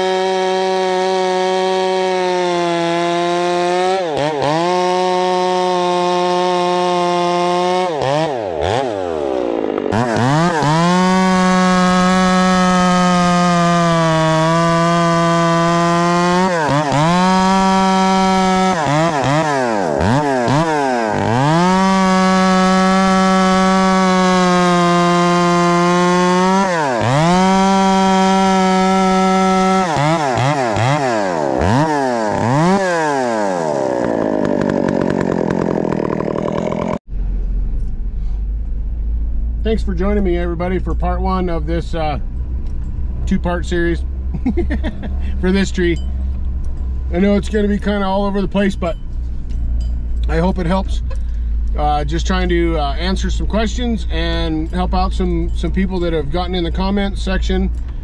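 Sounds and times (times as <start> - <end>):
chainsaw cutting wood: 0.0 - 37.1.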